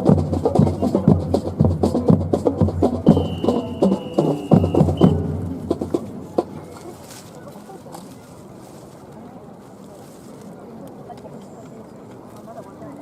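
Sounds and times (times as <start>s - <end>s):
music with percussive beat: 0.0s - 6.6s.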